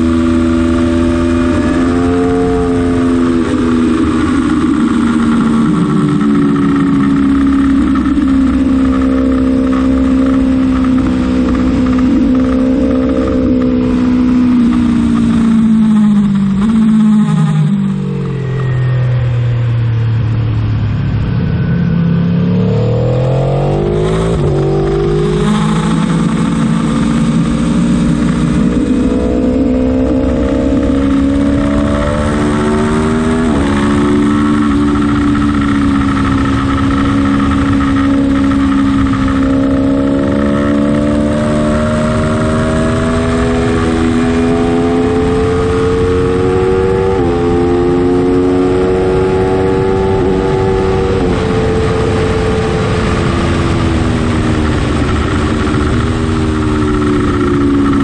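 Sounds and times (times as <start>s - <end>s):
motorcycle engine accelerating: 0.0s - 58.0s
wind rush: 0.0s - 58.0s.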